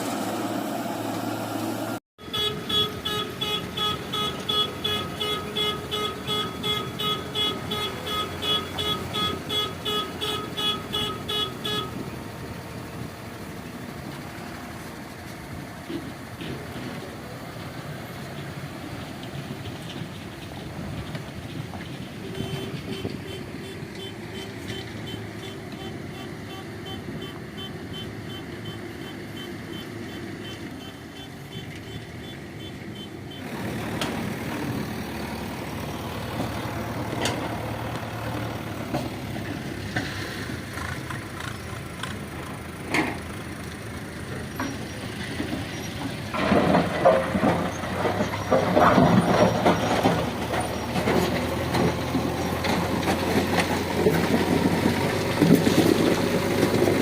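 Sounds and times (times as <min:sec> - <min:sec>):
heavy diesel machinery running: 0:00.0 - 0:57.0
reversing alarm beeping: 0:02.2 - 0:12.0, 0:22.2 - 0:33.5.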